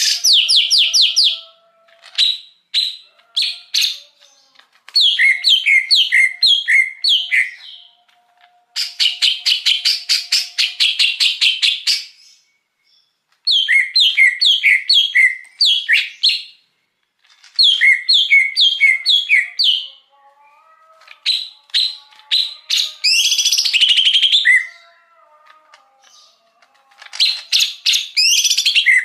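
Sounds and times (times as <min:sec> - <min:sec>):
bird singing chirps and whistles: 0:05.0 - 0:08.0, 0:08.8 - 0:16.6, 0:17.6 - 0:19.9, 0:21.2 - 0:24.8, 0:27.1 - 0:29.0.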